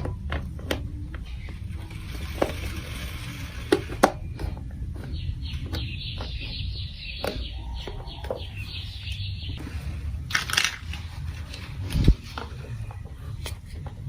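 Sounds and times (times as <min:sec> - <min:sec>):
marbles rattling along plastic track: 0:01.6 - 0:04.1.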